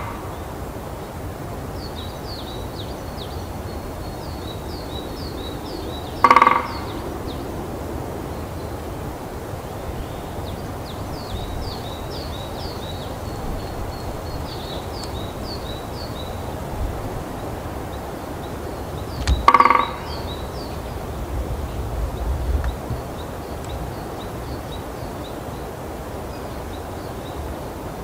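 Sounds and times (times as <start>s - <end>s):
woodpecker drumming on branch: 6.2s - 7.0s, 19.1s - 21.2s.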